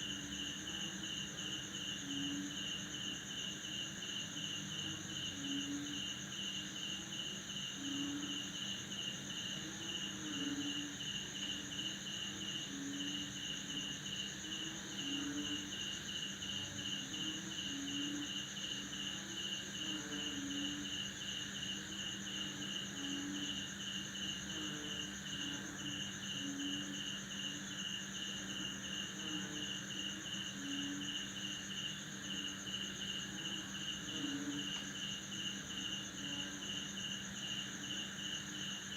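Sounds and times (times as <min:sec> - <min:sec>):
crickets chirping: 0:00.0 - 0:38.9
frogs croaking: 0:00.0 - 0:38.9
high insect trill: 0:00.0 - 0:38.9.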